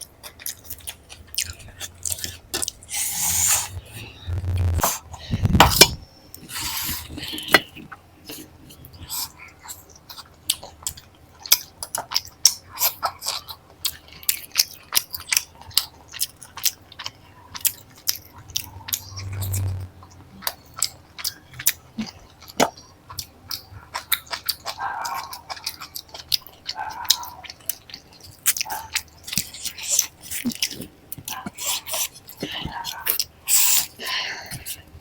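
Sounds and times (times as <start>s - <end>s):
rush of noise: 2.8s - 6.0s, 18.6s - 20.1s.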